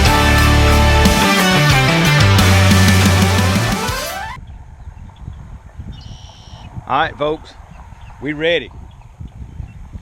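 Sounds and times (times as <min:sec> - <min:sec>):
heavy rock music: 0:00.0 - 0:04.4.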